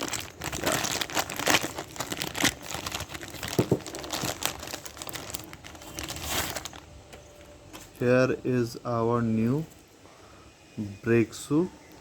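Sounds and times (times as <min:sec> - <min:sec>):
paper or plastic crinkling: 0:00.0 - 0:08.2.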